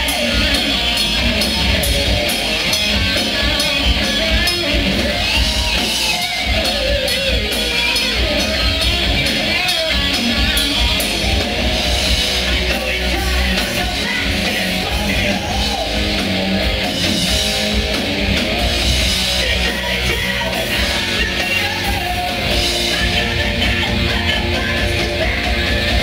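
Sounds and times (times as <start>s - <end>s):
hard rock band playing: 0.0s - 26.0s
person singing: 19.3s - 26.0s.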